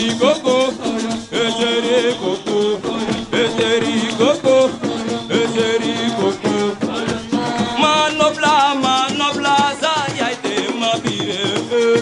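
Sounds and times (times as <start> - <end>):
upbeat dance music: 3.0 - 10.8.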